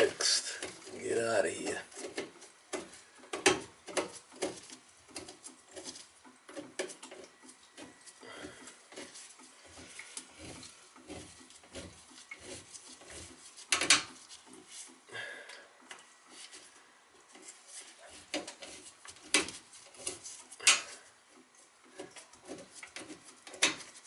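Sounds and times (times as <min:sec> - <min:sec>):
metal tools scraping pipe: 0:00.0 - 0:15.0, 0:16.3 - 0:24.0.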